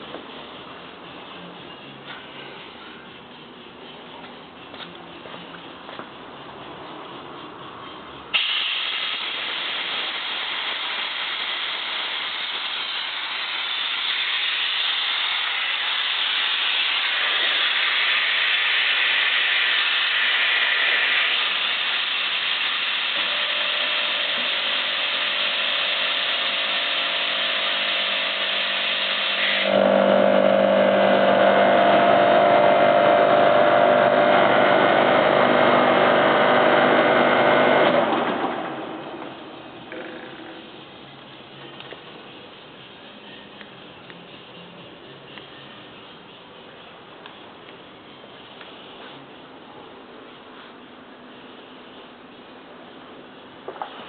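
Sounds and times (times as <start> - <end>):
air compressor rushing air: 0.0 - 43.6
machine hum with steady tones: 0.0 - 54.0.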